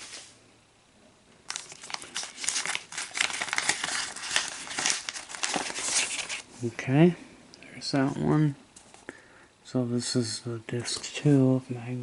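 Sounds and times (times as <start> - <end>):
sleeve rustling and crinkling: 1.5 - 6.5.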